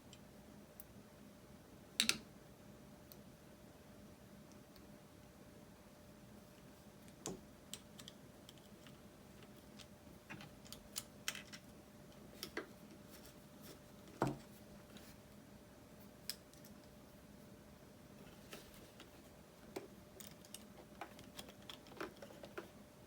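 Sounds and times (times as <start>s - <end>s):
faint steady hum: 0.0s - 23.0s
small plastic parts clicking: 19.7s - 22.8s.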